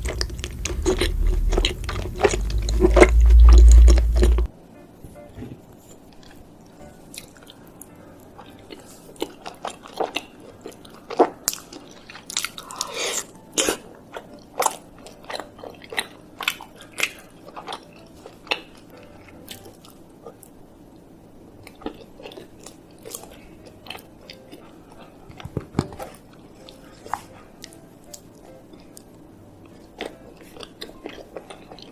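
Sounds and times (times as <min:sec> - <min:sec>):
biting and chewing: 0:00.0 - 0:04.5, 0:06.1 - 0:20.6, 0:21.6 - 0:31.9.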